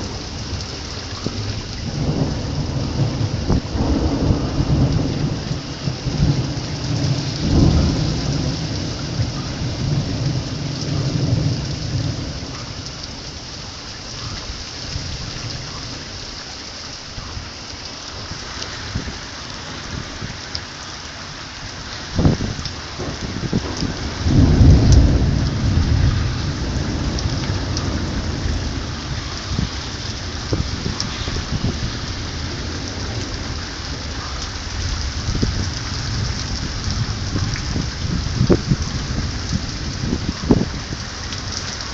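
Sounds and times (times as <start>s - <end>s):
thunder rumbling: 0.0s - 16.0s, 18.3s - 41.9s
rain falling steadily: 0.0s - 41.9s
sharp thunder crack: 1.4s - 12.3s, 22.2s - 40.8s.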